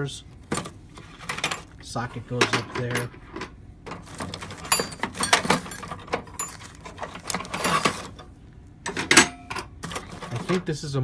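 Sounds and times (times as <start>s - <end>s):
metal hand tools clinking: 2.4s - 8.1s.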